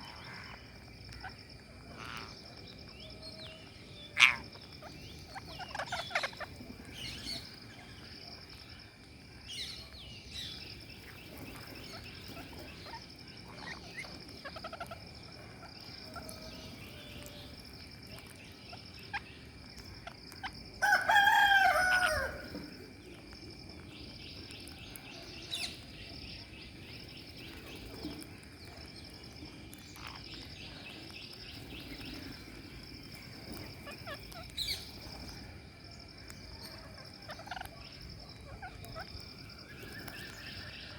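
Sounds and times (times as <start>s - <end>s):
birds chirping: 0.0s - 40.9s
loud falling bird call: 20.8s - 22.6s.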